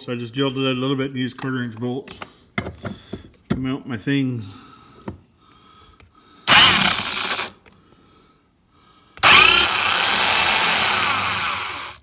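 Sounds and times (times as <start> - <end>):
power tool on metal: 6.5 - 7.5, 9.2 - 12.0.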